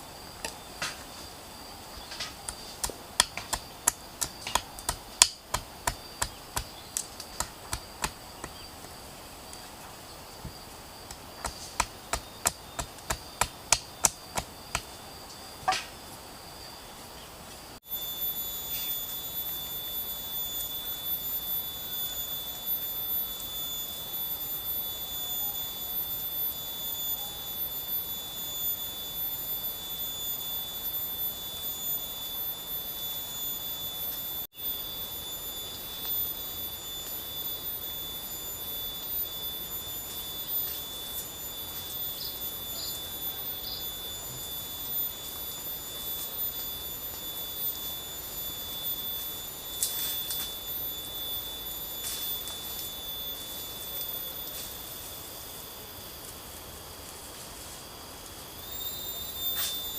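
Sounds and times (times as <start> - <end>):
high-pitched insect drone: 0.0 - 59.9
sharp blows on wood: 11.1 - 14.9.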